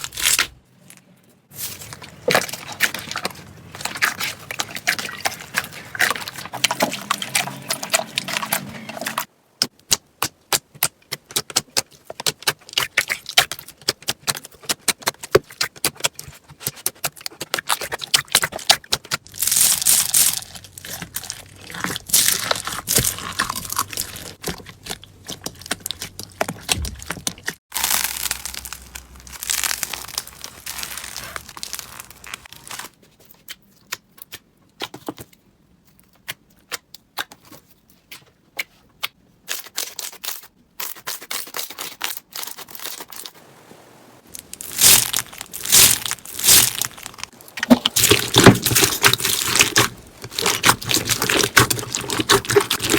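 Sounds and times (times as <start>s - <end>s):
crunchy slime crackling and popping: 1.5s - 9.3s, 10.7s - 32.9s, 44.3s - 52.9s.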